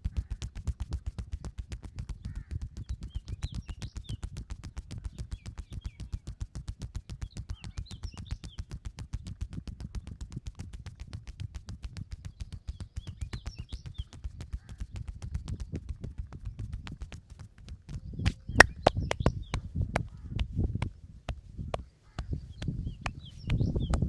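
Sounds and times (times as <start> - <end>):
hands slapping body in massage: 18.3 - 20.1.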